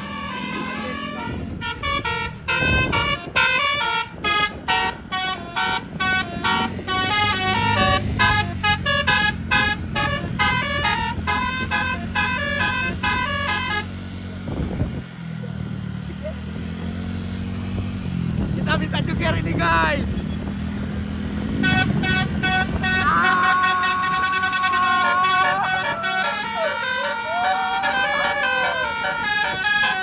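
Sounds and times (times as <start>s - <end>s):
bus horn tooting a tune: 0.0s - 14.0s, 21.5s - 30.0s
bus engine humming: 0.0s - 30.0s.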